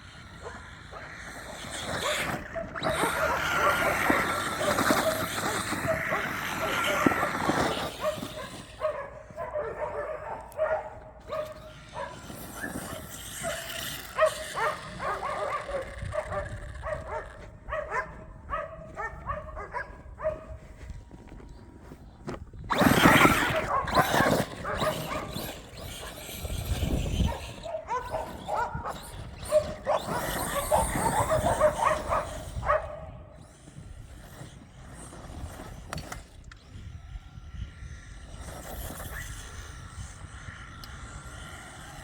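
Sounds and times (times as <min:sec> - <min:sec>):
dog yipping and whining: 0:27.2 - 0:32.8.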